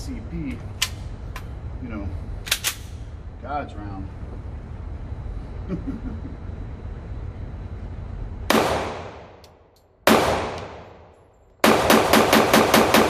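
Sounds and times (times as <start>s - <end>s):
gunshots with echo: 10.1s - 11.0s, 11.6s - 13.0s.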